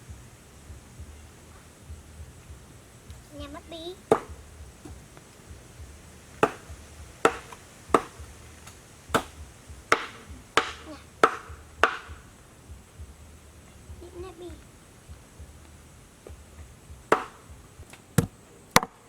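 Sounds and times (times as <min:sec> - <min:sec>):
knife chopping: 0:04.1 - 0:05.0, 0:06.4 - 0:12.2, 0:17.1 - 0:17.4.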